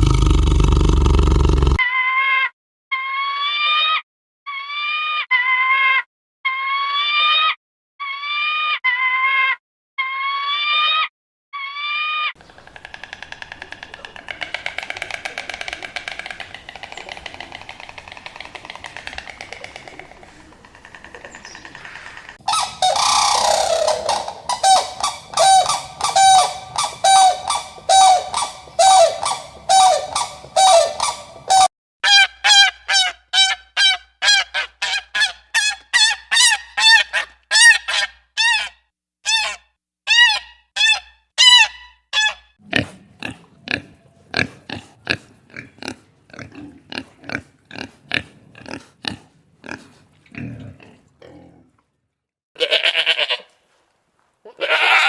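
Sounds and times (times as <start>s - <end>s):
short pitched animal calls: 12.6s - 31.7s, 52.6s - 53.5s
buzzy pulsing animal call: 22.4s - 31.7s
loud honking calls: 22.4s - 32.7s.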